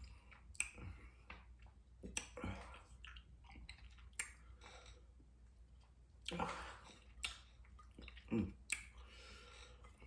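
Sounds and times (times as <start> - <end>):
soft chewing: 0.0 - 10.0
wet mouth smacks and clicks: 0.4 - 0.8, 2.0 - 2.4, 3.0 - 4.4, 7.1 - 7.5, 8.6 - 9.0.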